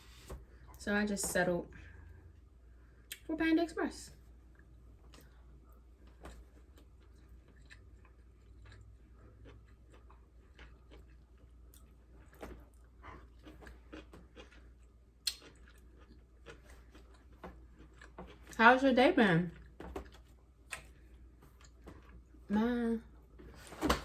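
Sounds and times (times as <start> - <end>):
person chewing food: 4.4 - 18.6, 19.6 - 22.4.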